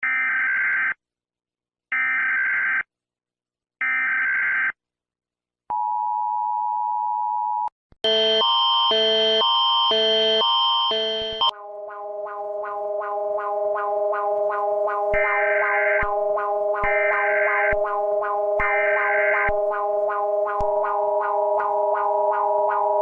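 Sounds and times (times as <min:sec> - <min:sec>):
alternating two-pitch alert tone: 0:09.1 - 0:23.0
steady alert tone: 0:11.3 - 0:23.0
buzzy data bursts: 0:11.4 - 0:23.0.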